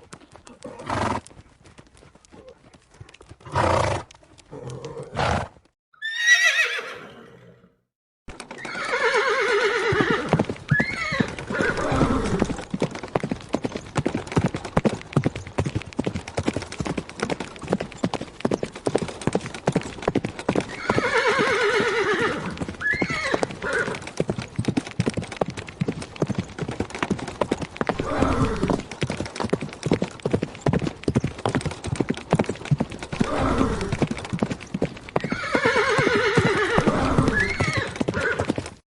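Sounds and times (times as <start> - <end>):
hooves galloping: 0.0 - 7.0, 8.3 - 38.8
horse whinnying: 3.5 - 7.8, 8.5 - 12.6, 20.7 - 24.0, 27.9 - 28.9, 33.1 - 34.1, 35.2 - 38.5.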